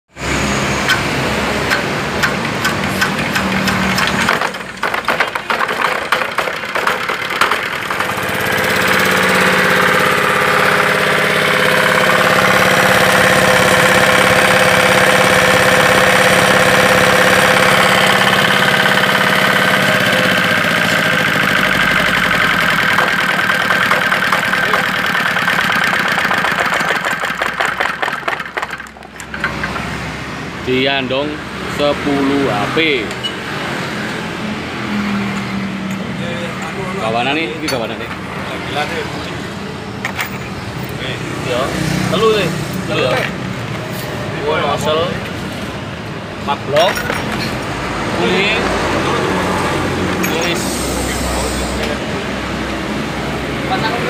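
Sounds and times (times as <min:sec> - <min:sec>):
diesel engine knocking: 0:00.9 - 0:30.1.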